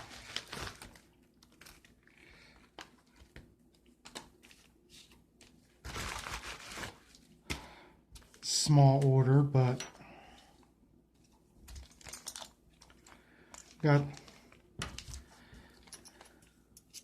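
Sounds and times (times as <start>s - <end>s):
crinkling plastic: 0.0s - 7.6s, 11.2s - 16.4s.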